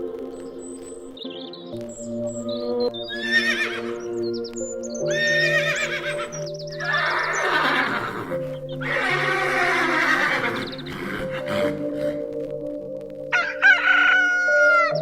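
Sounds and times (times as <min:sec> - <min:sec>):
calm music with held notes: 0:00.0 - 0:15.0
animal calls: 0:03.1 - 0:04.2, 0:05.1 - 0:12.4, 0:13.3 - 0:15.0.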